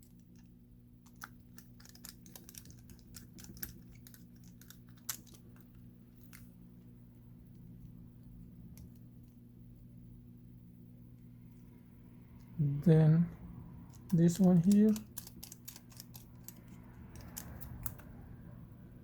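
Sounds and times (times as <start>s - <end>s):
low steady hum: 0.0s - 19.0s
screwdriver clicks and metallic ticks: 13.9s - 18.0s.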